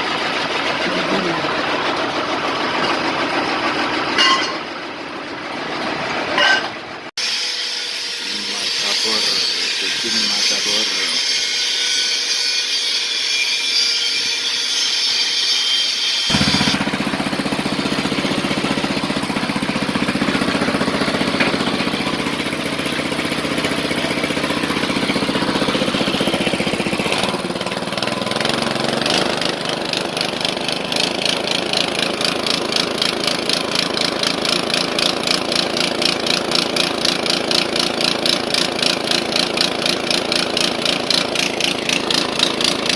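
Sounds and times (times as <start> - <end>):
drilling rig engine running: 0.0 - 7.6, 8.2 - 42.9
high hissing machine noise: 7.2 - 29.2.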